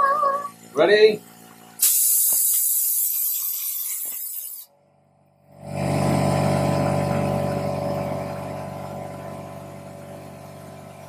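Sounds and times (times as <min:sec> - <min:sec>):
loud hiss: 0:01.8 - 0:04.7
motor humming: 0:05.5 - 0:11.0.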